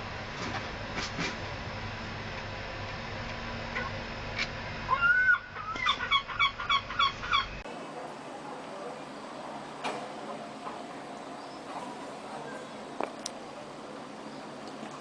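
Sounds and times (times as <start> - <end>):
bird calls: 3.8 - 7.6, 11.3 - 13.3.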